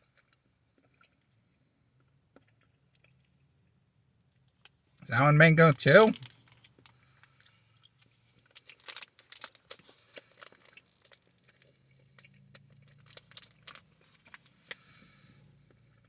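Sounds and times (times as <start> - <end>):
gummy snack being chewed: 7.3 - 15.0.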